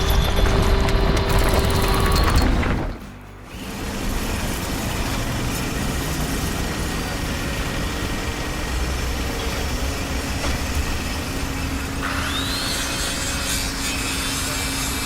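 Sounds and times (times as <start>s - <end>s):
heavy machine engine running: 0.0s - 13.0s.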